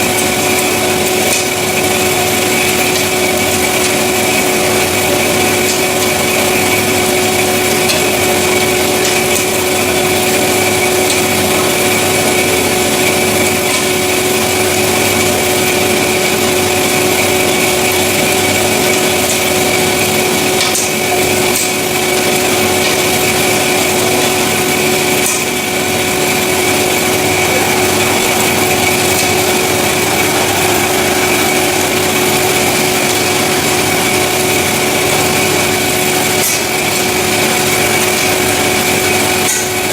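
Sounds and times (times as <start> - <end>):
band saw motor whine: 0.0 - 39.9
saw cutting metal hiss: 23.4 - 38.6.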